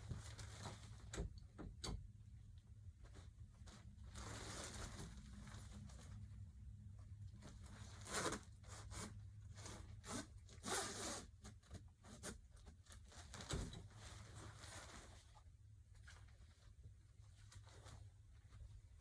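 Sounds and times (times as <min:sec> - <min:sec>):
fabric rustling: 0:03.0 - 0:19.0
zipper scraping: 0:07.8 - 0:11.5.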